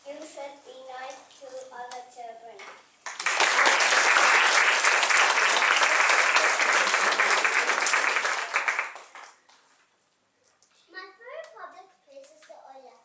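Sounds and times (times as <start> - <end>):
audience applauding: 3.1 - 9.5.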